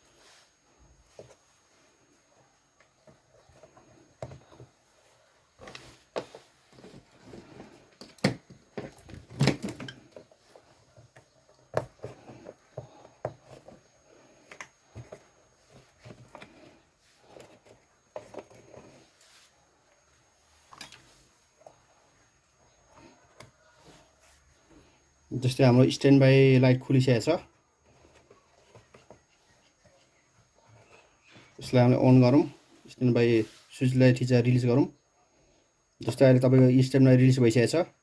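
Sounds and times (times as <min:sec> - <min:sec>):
hands handling circuit board: 0:05.5 - 0:19.2.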